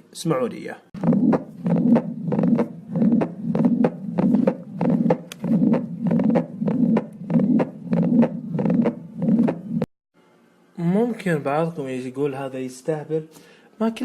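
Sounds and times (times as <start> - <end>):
heartbeat through stethoscope: 1.0 - 9.9.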